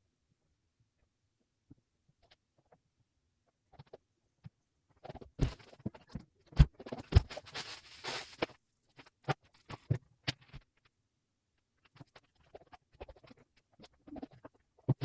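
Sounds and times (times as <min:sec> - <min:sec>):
rustling: 0:07.0 - 0:08.5.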